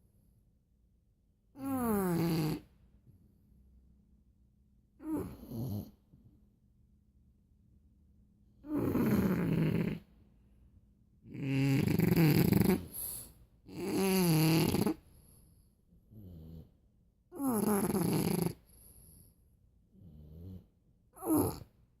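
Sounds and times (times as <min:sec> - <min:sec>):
dogs snoring: 0:01.6 - 0:02.7, 0:05.0 - 0:06.2, 0:08.6 - 0:10.1, 0:11.2 - 0:19.3, 0:19.9 - 0:21.8.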